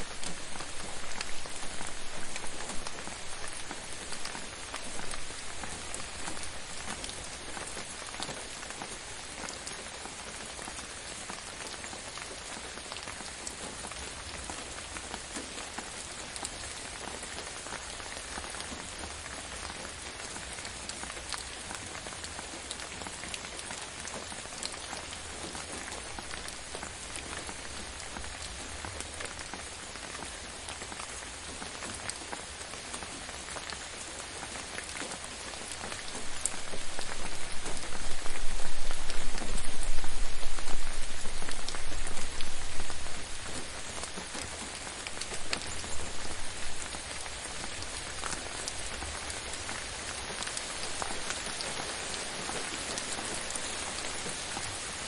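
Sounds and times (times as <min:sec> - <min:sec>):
rain pattering: 0:00.0 - 0:55.0.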